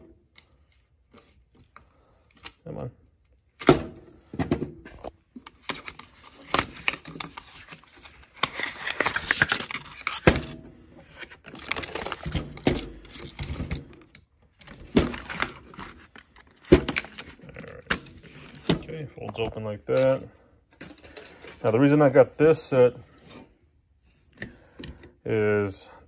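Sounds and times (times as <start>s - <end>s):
packaging clicks and knocks: 4.4s - 20.2s.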